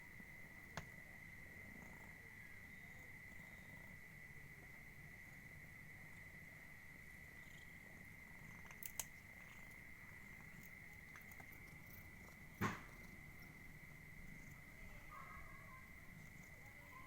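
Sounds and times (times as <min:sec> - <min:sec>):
cat purring: 0:00.0 - 0:17.0
soft clicks: 0:08.6 - 0:09.3.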